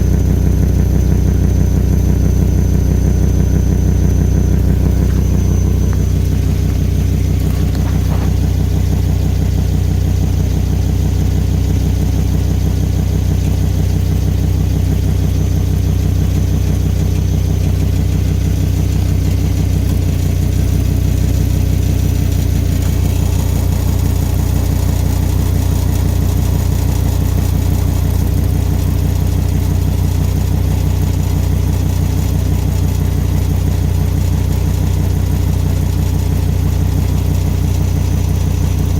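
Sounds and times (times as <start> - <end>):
car engine idling: 0.0 - 38.9
leaking exhaust: 0.0 - 38.9.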